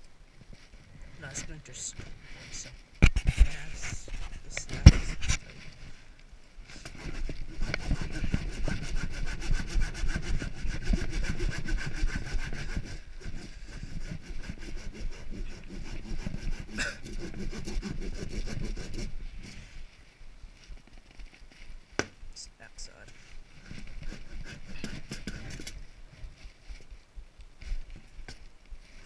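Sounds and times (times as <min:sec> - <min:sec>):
power sander rasping on wood: 0:06.9 - 0:19.1, 0:23.9 - 0:25.6.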